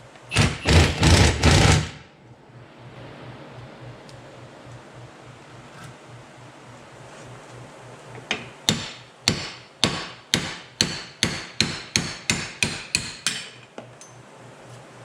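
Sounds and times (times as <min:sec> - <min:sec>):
hammer striking metal: 0:08.7 - 0:13.6.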